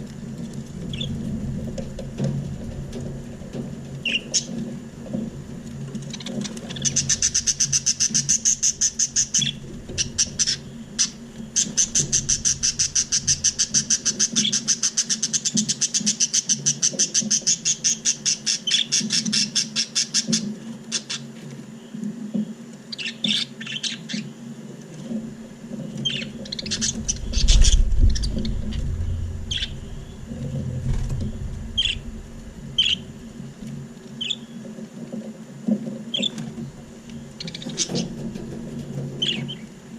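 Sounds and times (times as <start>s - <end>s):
low rumble: 0.0s - 5.9s, 6.8s - 14.6s, 25.3s - 34.4s
steady low hum: 0.0s - 16.4s, 24.2s - 39.9s
budgerigars chirping: 6.1s - 20.4s, 26.0s - 28.5s, 29.5s - 30.2s, 31.8s - 32.1s, 32.8s - 33.1s.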